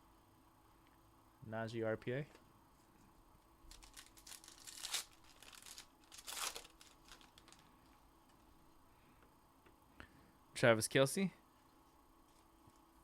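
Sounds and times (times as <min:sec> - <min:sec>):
cards and packaging rustling: 0:03.7 - 0:07.7.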